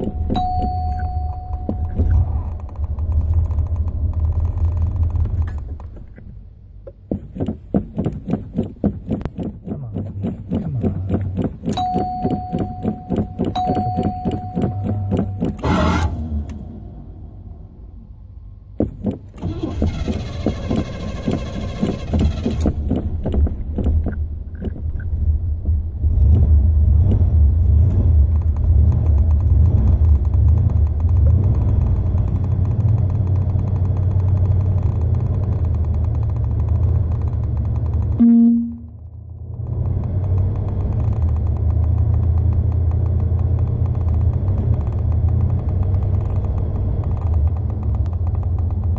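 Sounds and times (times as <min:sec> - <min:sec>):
car engine idling: 0:00.0 - 0:48.9
short steady tone: 0:11.8 - 0:16.4, 0:38.2 - 0:39.0
car starter cranking: 0:18.8 - 0:25.4.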